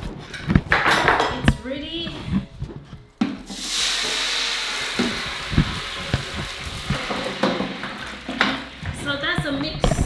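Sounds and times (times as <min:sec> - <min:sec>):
hot pot sizzling: 0:03.4 - 0:09.6.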